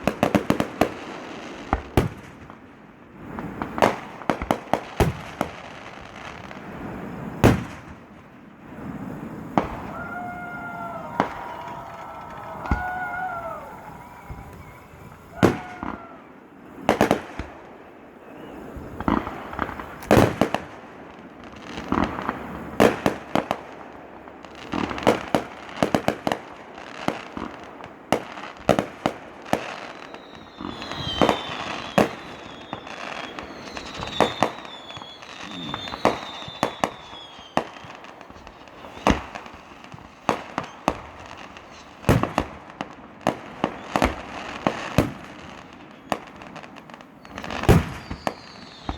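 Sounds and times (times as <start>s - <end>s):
falling firework whistles: 3.2s - 20.7s, 24.5s - 48.9s
firework shells bursting: 28.6s - 42.6s.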